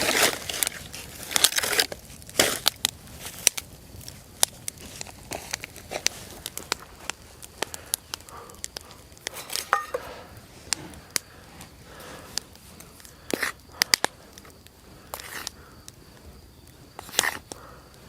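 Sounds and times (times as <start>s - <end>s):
twigs snapping: 0.0s - 10.1s.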